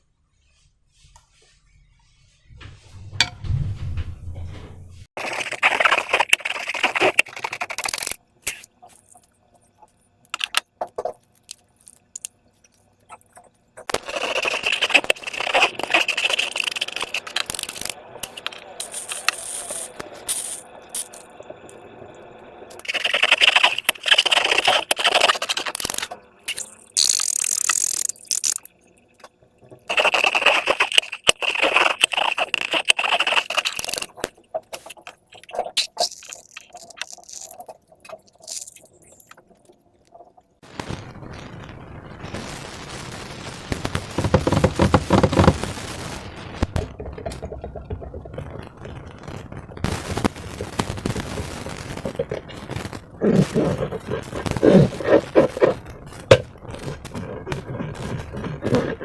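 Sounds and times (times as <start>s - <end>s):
slime and balloons crackling: 5.2s - 9.1s, 13.8s - 21.2s, 22.8s - 28.7s, 29.8s - 39.4s, 40.1s - 59.0s.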